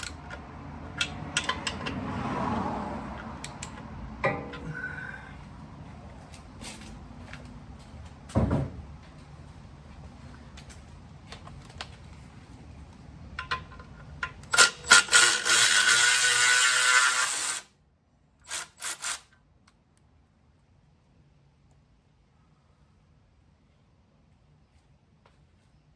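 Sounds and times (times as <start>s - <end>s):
electric ratchet spinning: 14.5s - 17.7s, 18.5s - 19.3s.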